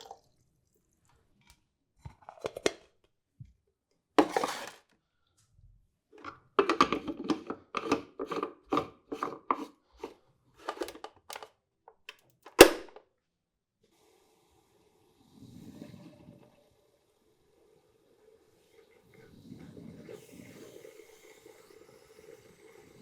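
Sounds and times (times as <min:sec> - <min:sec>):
knocks taps and scrapes: 0:04.2 - 0:04.8, 0:06.2 - 0:13.0
sharp loud click: 0:12.5 - 0:13.0.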